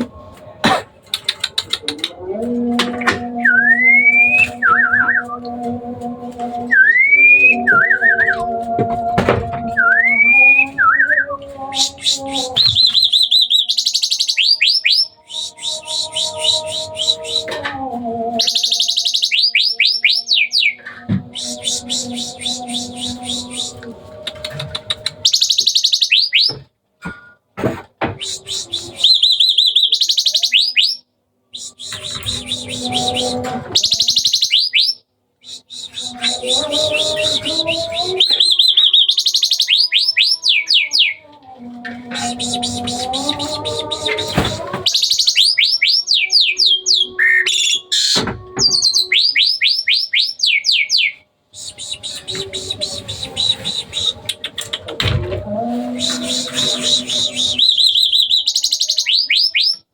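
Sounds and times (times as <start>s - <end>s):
starling singing: 0.0s - 26.6s, 28.0s - 59.9s
harsh bird call: 18.4s - 23.8s, 25.2s - 26.6s, 28.2s - 31.0s, 31.6s - 41.2s, 42.1s - 54.7s, 55.7s - 59.8s.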